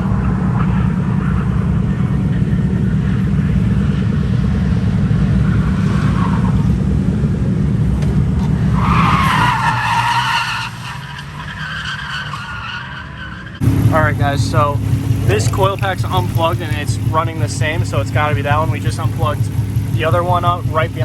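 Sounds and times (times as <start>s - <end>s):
car engine running rough: 0.0s - 21.0s
tyres squealing: 7.9s - 21.0s.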